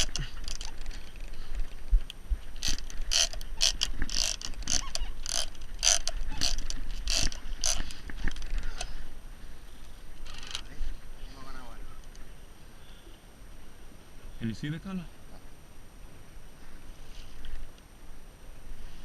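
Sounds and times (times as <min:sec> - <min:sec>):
fishing reel clicking: 0:00.0 - 0:01.8, 0:02.6 - 0:08.9.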